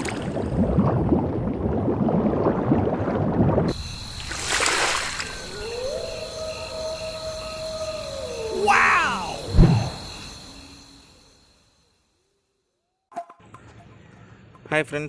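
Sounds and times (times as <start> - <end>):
water splashing and sloshing: 0.0 - 6.3
short whoosh: 9.5 - 10.0.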